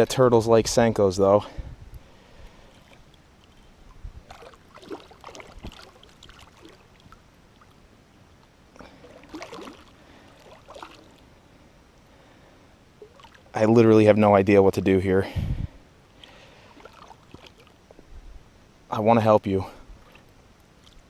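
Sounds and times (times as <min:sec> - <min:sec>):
faint splashing and scuffing: 0:02.4 - 0:07.8, 0:08.4 - 0:11.3, 0:16.2 - 0:18.0, 0:19.8 - 0:21.0.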